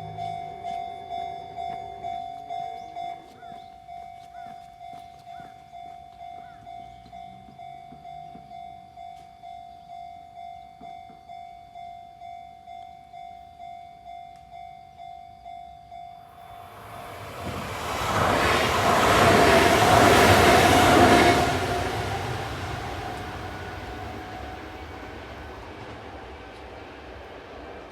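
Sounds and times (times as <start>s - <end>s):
electric train passing: 15.4s - 27.9s.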